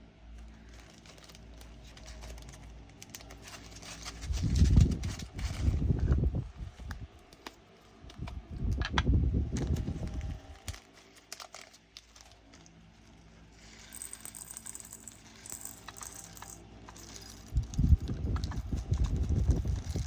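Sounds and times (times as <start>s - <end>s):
small resin beads rattling: 13.6s - 20.0s.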